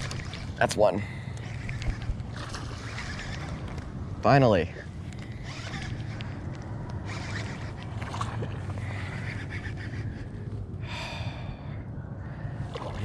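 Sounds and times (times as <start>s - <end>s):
steady low rumble: 0.0s - 13.0s
clicks and scrapes against kayak: 1.3s - 3.9s, 5.0s - 8.3s
fishing reel winding: 2.7s - 3.8s, 5.1s - 7.8s.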